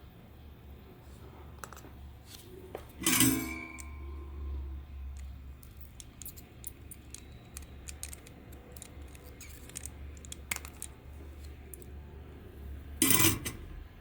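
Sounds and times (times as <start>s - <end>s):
steady low hum: 0.0s - 14.0s
clicks and taps of small parts: 5.2s - 11.0s.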